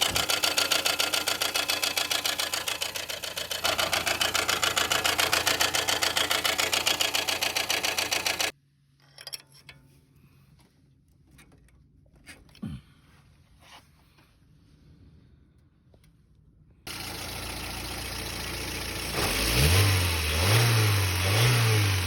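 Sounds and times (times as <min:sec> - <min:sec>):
car engine running: 0:00.0 - 0:08.5, 0:16.9 - 0:22.0.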